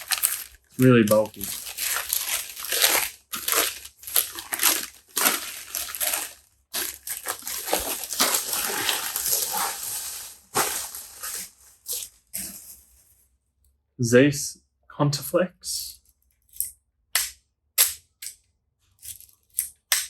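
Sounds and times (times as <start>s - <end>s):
newspaper rustling and crumpling: 0.0s - 13.1s.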